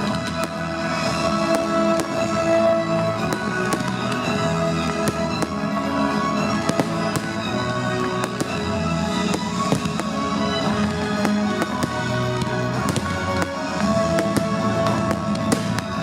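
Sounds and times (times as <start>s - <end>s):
fireworks bangs and crackles: 0.0s - 16.0s
loud music with held notes: 0.0s - 16.0s.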